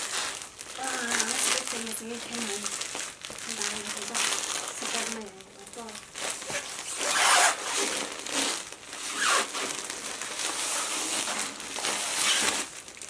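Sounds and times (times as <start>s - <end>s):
packaging crinkling: 0.0s - 13.0s.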